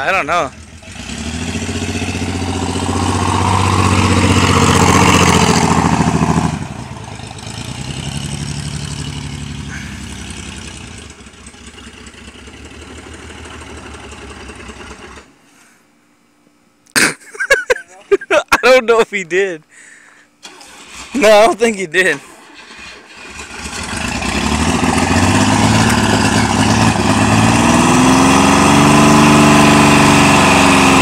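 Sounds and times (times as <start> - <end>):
pickup engine revving with rod knock: 0.6 - 11.1, 23.3 - 31.0.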